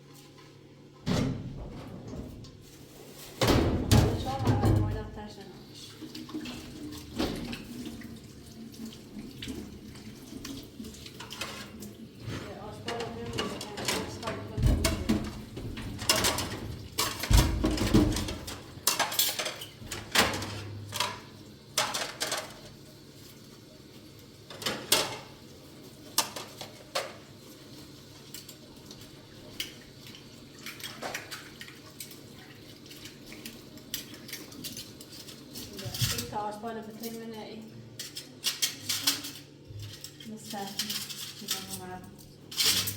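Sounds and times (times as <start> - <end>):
objects clinking and knocking: 38.0 - 42.9.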